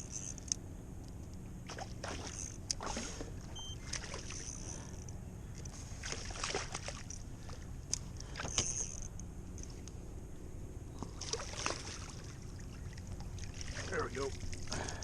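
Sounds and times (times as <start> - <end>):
water splashing against a kayak: 5.8 - 7.6, 11.1 - 15.0.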